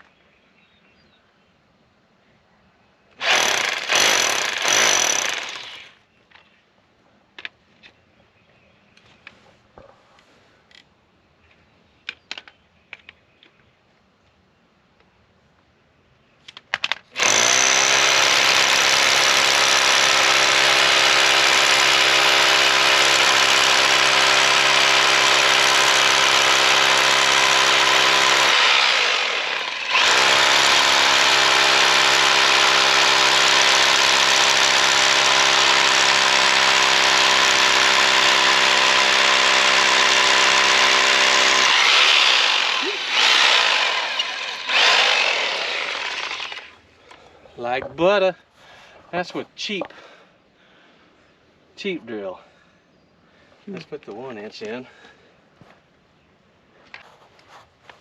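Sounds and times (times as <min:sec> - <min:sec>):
hammer drill boring through wall: 0:03.2 - 0:06.0, 0:17.2 - 0:46.8.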